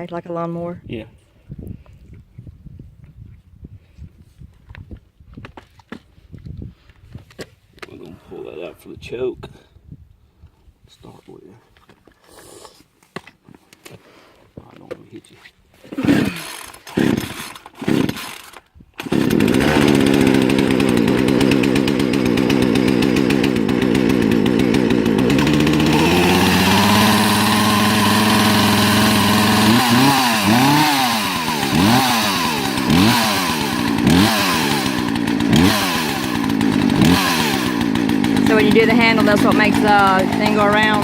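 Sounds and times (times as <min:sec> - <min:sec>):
starter cord pulls: 0:15.9 - 0:30.8, 0:31.5 - 0:41.0
chainsaw revving: 0:15.9 - 0:41.0
chainsaw engine idling: 0:16.0 - 0:41.0.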